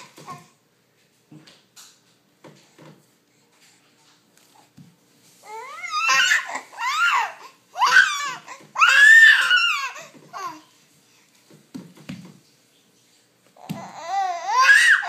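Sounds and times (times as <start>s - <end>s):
baby shrieking happily: 5.5s - 10.6s, 13.7s - 15.0s.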